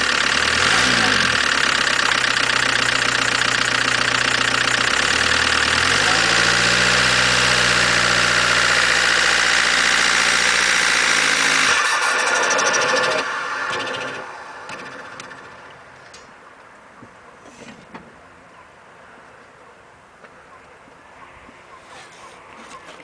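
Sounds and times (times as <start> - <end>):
diesel engine revving with hiss: 0.0 - 14.7.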